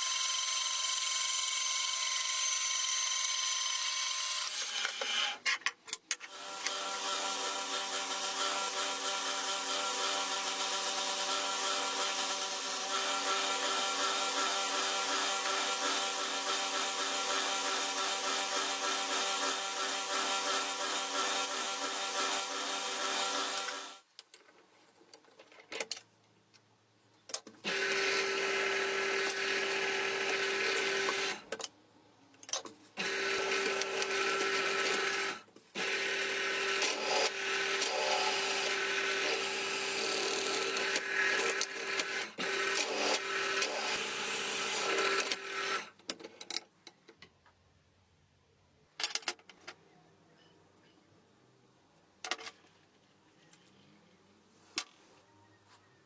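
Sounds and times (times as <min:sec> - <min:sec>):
small electric power tool running: 0:00.0 - 0:05.2, 0:06.3 - 0:24.0, 0:27.6 - 0:31.5, 0:33.0 - 0:45.9.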